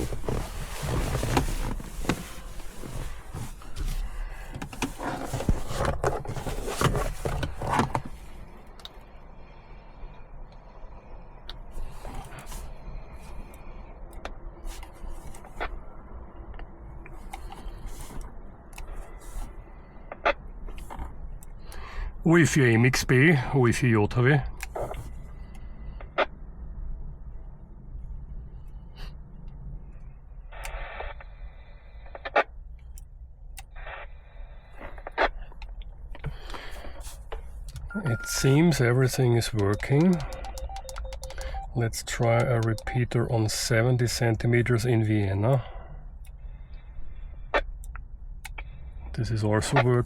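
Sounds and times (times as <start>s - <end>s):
steady low rumble: 0.0s - 22.2s, 23.8s - 50.0s
faint steady tone: 37.8s - 44.3s
radio control clicks: 42.2s - 43.1s.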